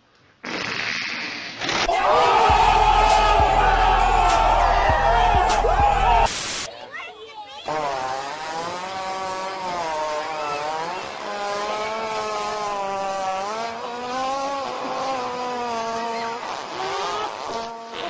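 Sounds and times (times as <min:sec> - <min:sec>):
long buzzy fart: 0:00.4 - 0:01.9, 0:07.7 - 0:18.0.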